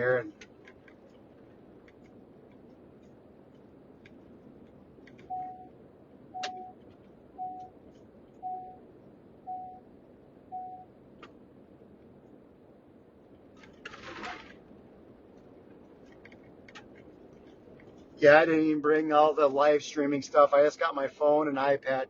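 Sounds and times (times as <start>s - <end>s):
low hum of car driving: 0.0s - 22.0s
short even beeps: 5.3s - 5.7s, 6.4s - 6.8s, 7.4s - 7.7s, 8.4s - 8.8s, 9.5s - 9.8s, 10.5s - 10.9s
brief rustle: 13.6s - 14.6s.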